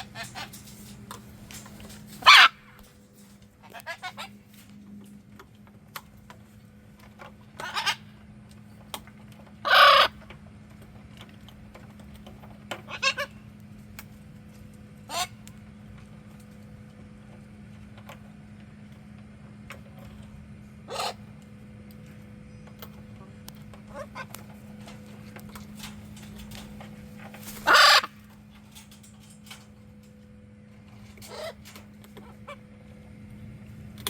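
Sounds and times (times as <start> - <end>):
parrots squawking: 0.0 - 1.0, 1.9 - 2.8, 3.6 - 4.4, 7.6 - 8.1, 9.6 - 10.2, 12.8 - 13.4, 15.1 - 15.4, 20.9 - 21.3, 23.9 - 24.4, 27.5 - 28.3, 31.2 - 32.7
steady low hum: 0.0 - 34.0.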